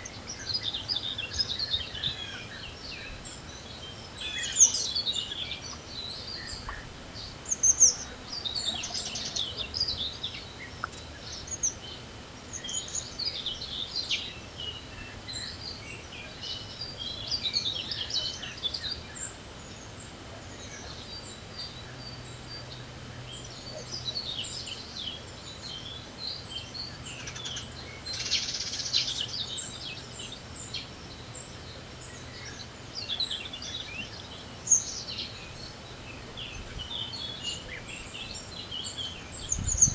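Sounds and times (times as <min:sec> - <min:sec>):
songbirds chirping and trilling: 0:00.0 - 0:39.9
wind hiss: 0:39.2 - 0:39.9.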